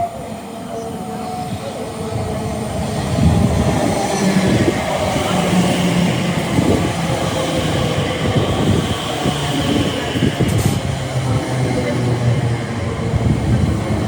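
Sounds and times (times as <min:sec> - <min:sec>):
electric train rumbling on track: 0:00.0 - 0:14.0.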